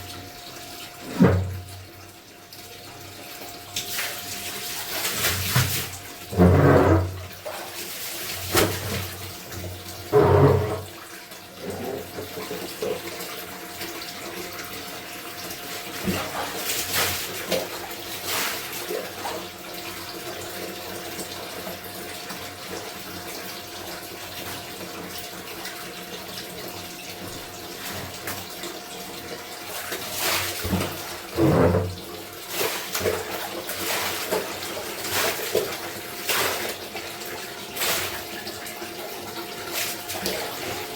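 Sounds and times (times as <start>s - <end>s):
water running and splashing: 0.0s - 40.9s
water sloshing: 10.1s - 10.9s, 29.8s - 36.8s.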